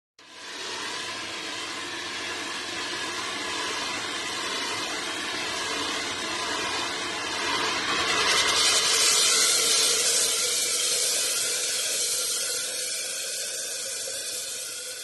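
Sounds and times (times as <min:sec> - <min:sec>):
fire extinguisher hissing spray: 0:08.5 - 0:15.0.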